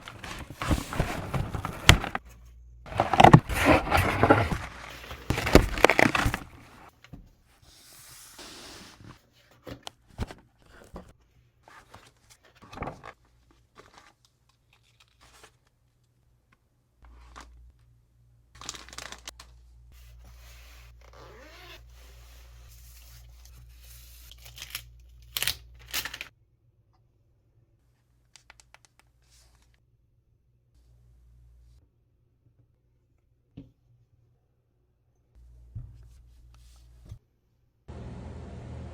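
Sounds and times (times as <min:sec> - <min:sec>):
packaging tearing and crinkling: 0:00.0 - 0:02.2, 0:02.9 - 0:06.9, 0:18.6 - 0:19.3
clicks taps and rustles: 0:02.9 - 0:06.9.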